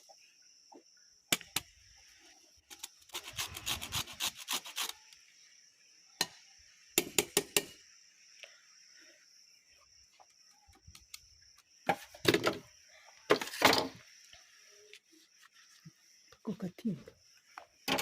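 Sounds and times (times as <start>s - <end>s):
rind grating on hand grater: 3.1s - 5.0s.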